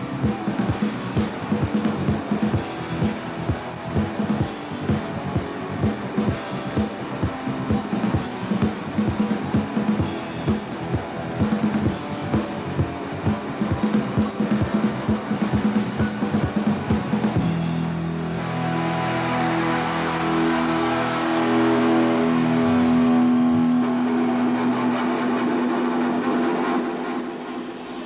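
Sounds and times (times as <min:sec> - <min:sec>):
drum kit fast beat: 0:00.0 - 0:18.2
bass and guitar: 0:00.0 - 0:27.8.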